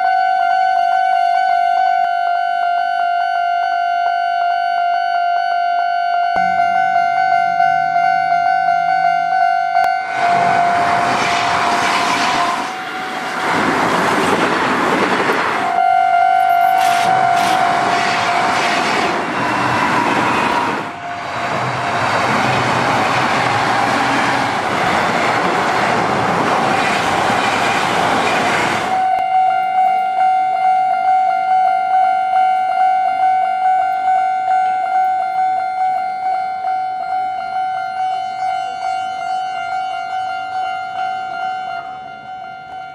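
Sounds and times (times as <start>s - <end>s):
level crossing warning tone: 0.0s - 42.9s
brief high whine: 6.4s - 13.9s, 15.6s - 22.0s
train wheels on rails: 10.0s - 15.8s, 16.4s - 29.8s.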